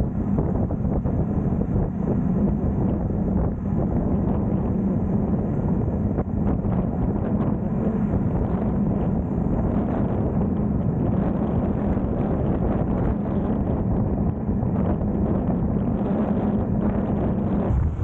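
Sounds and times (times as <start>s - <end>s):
vehicle engine hum: 0.0s - 18.0s
wind buffeting microphone: 0.0s - 18.0s
road noise: 16.3s - 18.0s.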